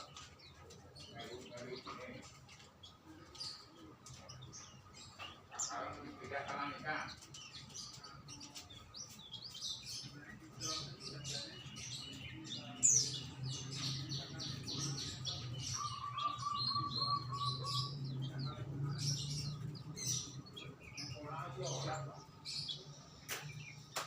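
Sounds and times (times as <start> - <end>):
songbirds chirping and singing: 0.0 - 24.0.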